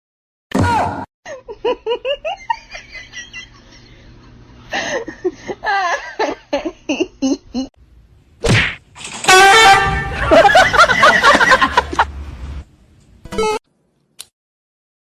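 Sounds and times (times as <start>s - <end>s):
person laughing: 1.3s - 7.7s, 10.1s - 12.1s
loud short sound: 8.5s - 10.3s.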